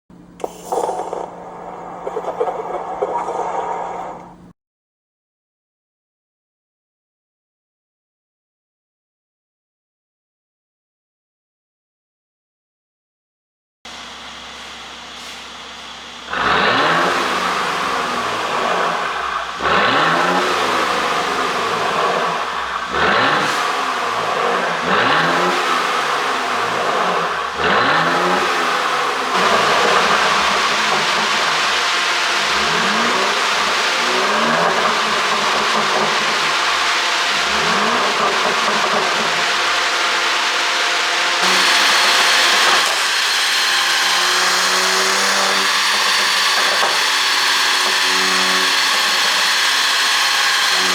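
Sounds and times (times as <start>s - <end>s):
car engine idling and revving: 13.9s - 50.9s.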